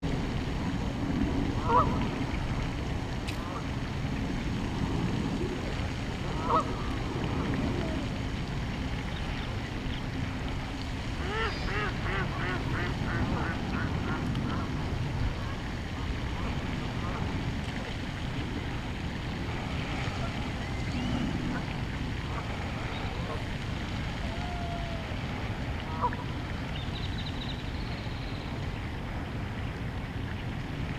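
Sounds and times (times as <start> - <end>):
steady low rumble: 0.0 - 11.2
ducks calling: 6.3 - 6.9, 11.2 - 14.7.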